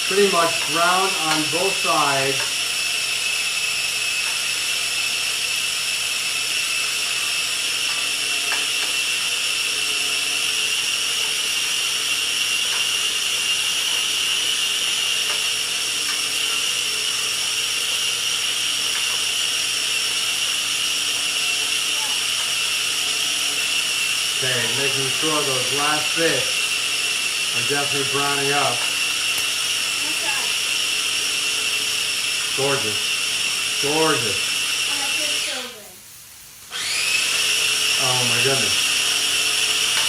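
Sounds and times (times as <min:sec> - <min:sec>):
high-pitched appliance whine: 0:00.0 - 0:40.0.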